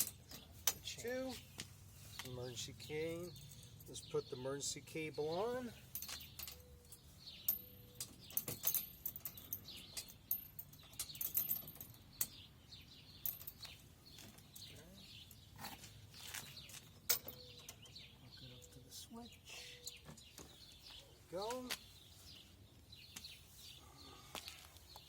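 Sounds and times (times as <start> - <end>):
birds chirping: 0.0 - 25.0
metal clicks and clinks: 5.9 - 12.4, 13.2 - 13.8, 17.0 - 17.9.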